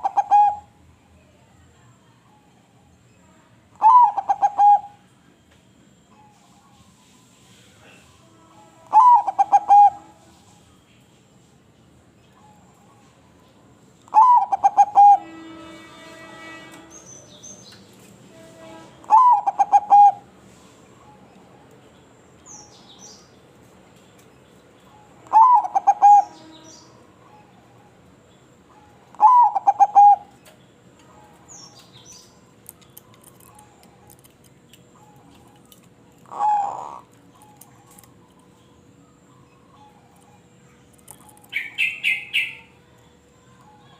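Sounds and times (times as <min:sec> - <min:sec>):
dove cooing: 0:00.0 - 0:00.7, 0:03.8 - 0:05.0, 0:08.9 - 0:10.1, 0:14.1 - 0:15.2, 0:19.1 - 0:20.3, 0:25.2 - 0:26.5, 0:28.7 - 0:30.4, 0:36.2 - 0:38.2.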